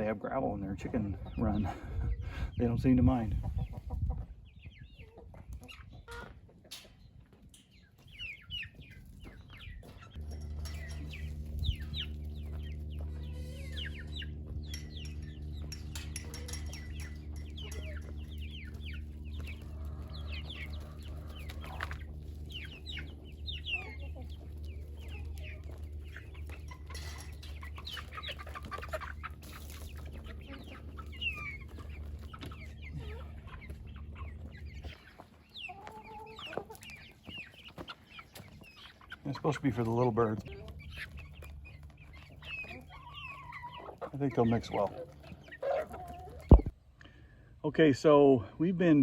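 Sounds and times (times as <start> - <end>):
chickens clucking: 0.0 - 49.0
chicks peeping: 0.0 - 49.0
low mechanical hum: 10.0 - 35.5.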